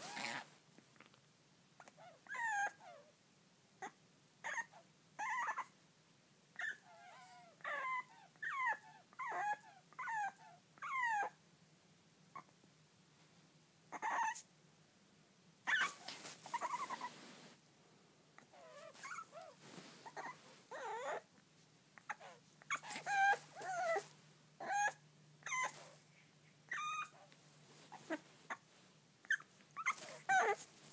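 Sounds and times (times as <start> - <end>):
dog whining and whimpering: 0.0 - 0.5, 1.8 - 3.1, 3.8 - 5.7, 6.6 - 11.4, 13.9 - 14.5, 15.7 - 17.2, 18.4 - 21.3, 22.0 - 26.0, 26.7 - 27.3, 29.2 - 30.7.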